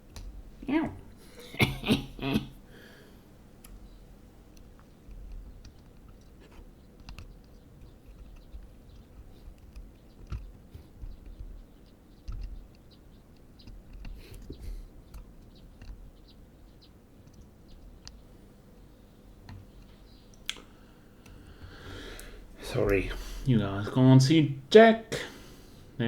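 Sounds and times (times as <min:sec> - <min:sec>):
small tools clicking and tapping: 0:04.5 - 0:16.2.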